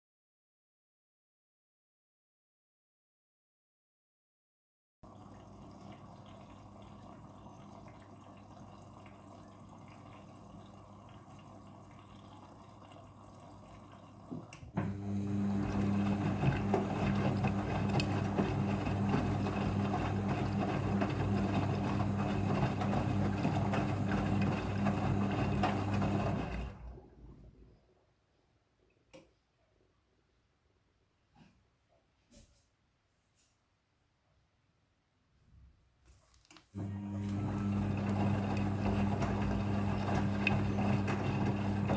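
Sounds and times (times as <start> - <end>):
washing machine hum: 5.0 - 27.9, 36.7 - 41.9.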